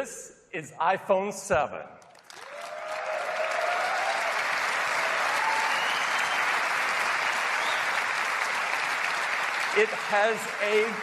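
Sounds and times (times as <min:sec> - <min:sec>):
audience applauding and cheering: 0:02.1 - 0:11.0
whoops: 0:02.4 - 0:06.6.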